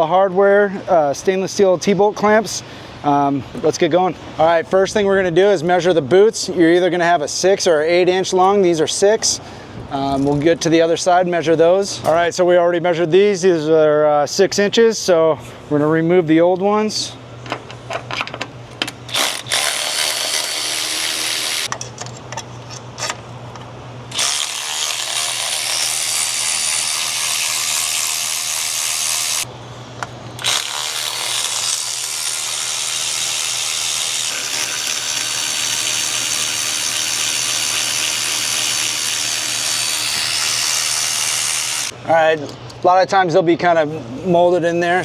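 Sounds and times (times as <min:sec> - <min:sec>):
power tool running: 0:19.1 - 0:21.7, 0:24.1 - 0:29.5, 0:30.4 - 0:42.0.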